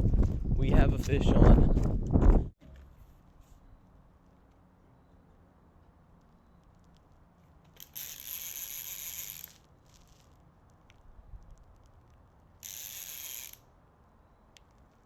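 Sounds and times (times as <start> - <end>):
fishing reel clicking: 7.7 - 10.4, 12.6 - 13.7.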